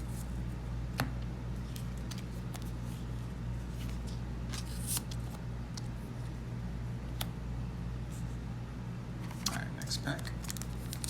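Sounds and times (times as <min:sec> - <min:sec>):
steady low hum: 0:00.0 - 0:11.0
cards sliding and clicking: 0:03.8 - 0:05.9.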